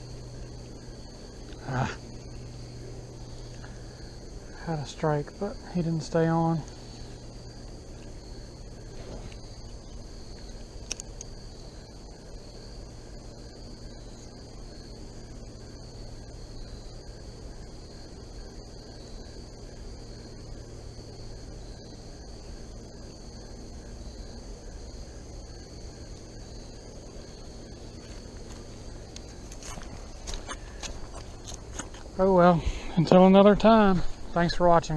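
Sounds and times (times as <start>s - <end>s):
insects trilling: 0.0s - 34.9s
low outdoor rumble: 0.0s - 34.9s
sharp click: 10.8s - 11.3s.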